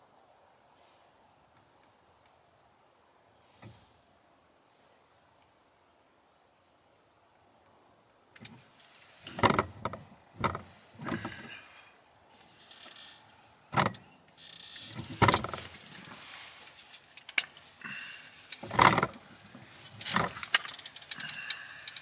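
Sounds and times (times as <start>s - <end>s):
rustling: 12.3s - 22.0s.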